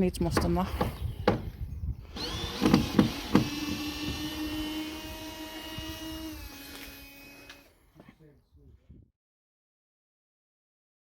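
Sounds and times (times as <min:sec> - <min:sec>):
cordless drill motor whining: 0:02.1 - 0:07.8.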